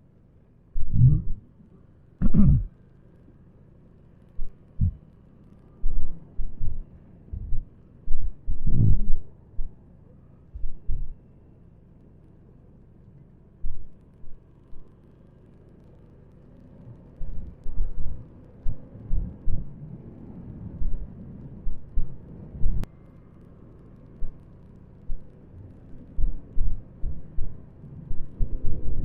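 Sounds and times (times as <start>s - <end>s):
low rumble of motorcycle ride: 0.0s - 29.0s
wind buffeting microphone: 5.8s - 9.8s, 17.2s - 22.9s, 26.2s - 29.0s.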